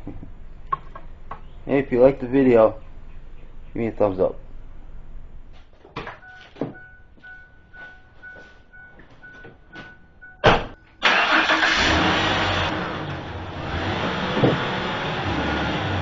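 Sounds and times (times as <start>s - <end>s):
vehicle engine starting and running: 10.4s - 16.0s.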